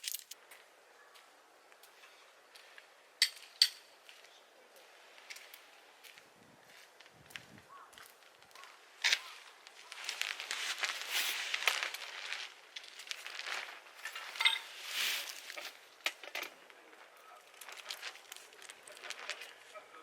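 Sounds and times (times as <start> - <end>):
objects rustling and clattering: 0.0 - 0.4, 8.1 - 19.8.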